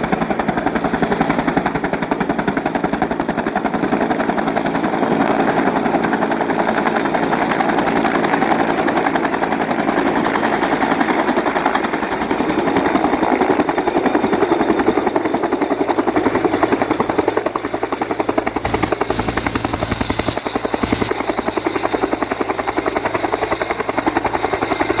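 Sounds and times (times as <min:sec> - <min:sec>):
helicopter rotor beating: 0:00.0 - 0:25.0
turbine engine whine: 0:16.8 - 0:25.0.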